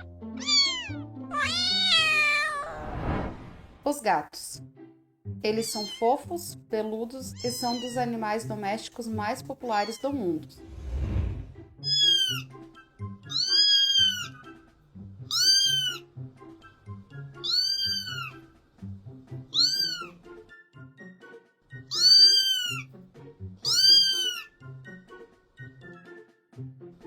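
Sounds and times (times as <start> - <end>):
quiet background music: 0.0 - 2.5, 3.8 - 27.0
kitten meowing: 0.0 - 2.8, 5.7 - 6.1, 7.3 - 8.1, 11.8 - 12.5, 13.3 - 14.4, 15.3 - 16.1, 17.4 - 18.4, 19.5 - 20.2, 21.9 - 22.9, 23.6 - 24.6.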